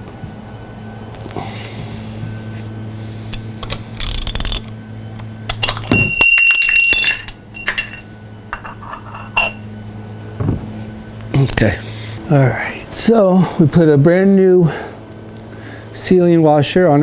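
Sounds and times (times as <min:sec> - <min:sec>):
steady low hum: 0:00.0 - 0:17.0
small metal parts clinking: 0:03.3 - 0:09.6.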